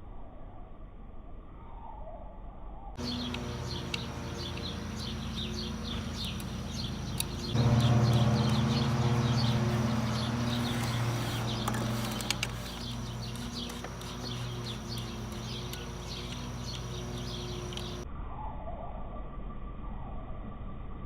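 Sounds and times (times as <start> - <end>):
steady low hum: 2.3 - 21.0
birds chirping: 3.0 - 18.0
sharp clicks: 3.2 - 4.8, 6.0 - 18.0.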